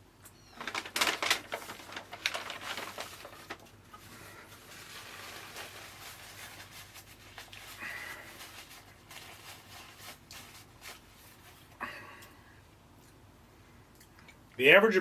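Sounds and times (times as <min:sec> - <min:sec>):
wrapper rustling: 0:00.4 - 0:11.7.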